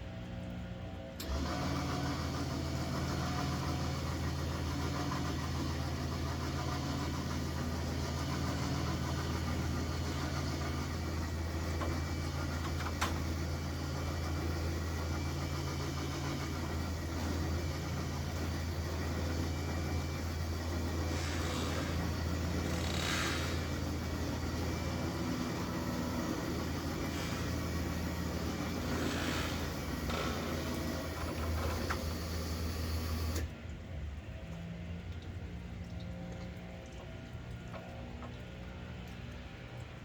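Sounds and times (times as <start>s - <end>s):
vehicle engine idling: 3.0s - 33.5s.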